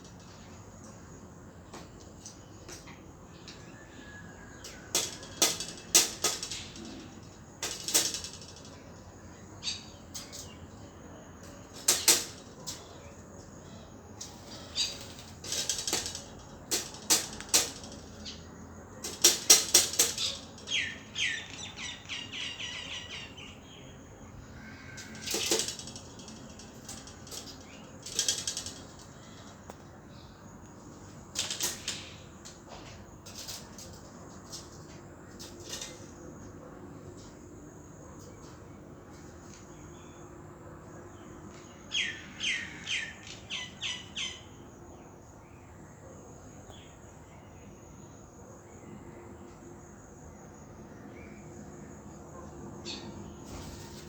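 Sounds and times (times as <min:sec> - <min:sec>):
birds chirping in harsh bursts: 0:04.5 - 0:30.5.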